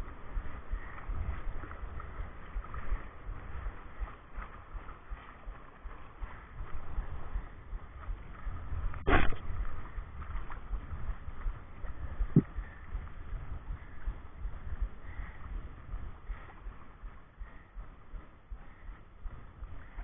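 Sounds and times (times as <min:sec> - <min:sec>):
low rumble of water: 0:00.0 - 0:20.0
wind buffeting microphone: 0:00.0 - 0:20.0
short low thud: 0:08.9 - 0:09.5, 0:12.3 - 0:12.5.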